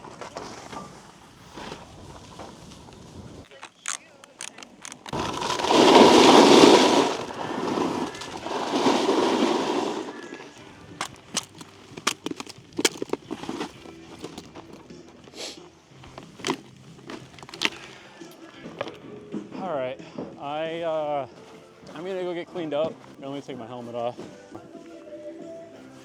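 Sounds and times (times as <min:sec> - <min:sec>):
snowboard edge scraping icy snow: 0:05.1 - 0:14.5.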